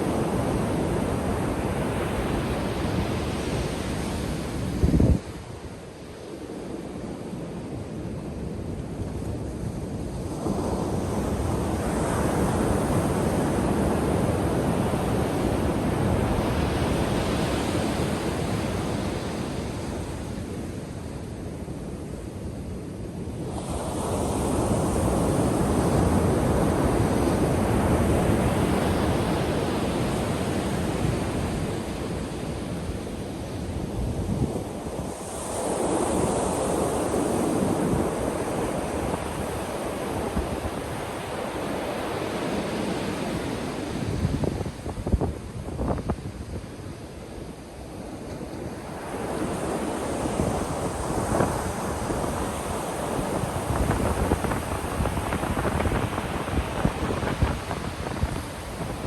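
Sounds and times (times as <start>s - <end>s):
ocean waves breaking: 47.0s - 59.0s.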